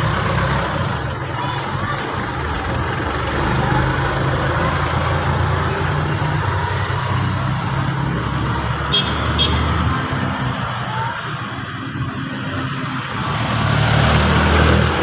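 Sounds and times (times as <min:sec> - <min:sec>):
vehicle engine running: 0:00.0 - 0:10.8.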